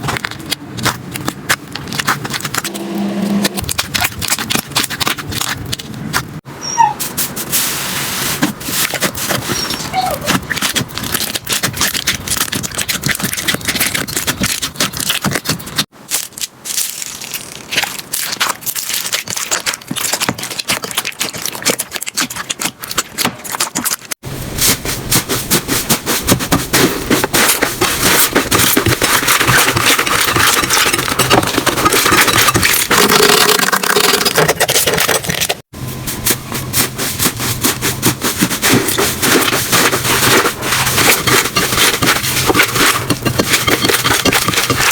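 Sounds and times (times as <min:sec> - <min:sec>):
slime squelching and popping: 0:03.6 - 0:06.4, 0:08.8 - 0:24.1.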